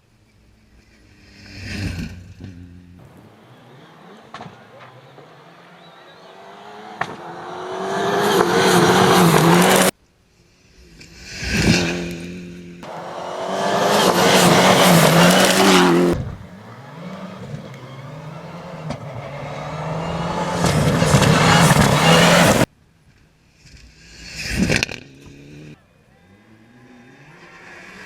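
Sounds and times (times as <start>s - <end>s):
rally cars passing at speed: 1.4s - 9.9s, 11.6s - 22.7s, 25.2s - 28.0s.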